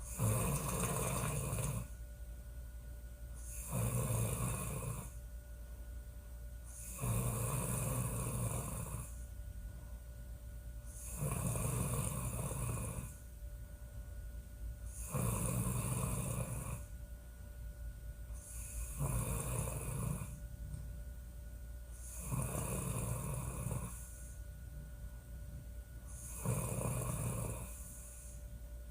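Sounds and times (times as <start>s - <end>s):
woman snoring: 0.0s - 2.0s, 3.4s - 5.2s, 6.7s - 9.2s, 10.9s - 13.2s, 14.9s - 16.9s, 18.4s - 20.4s, 22.0s - 24.4s, 26.1s - 28.4s
steady low hum: 0.0s - 28.9s.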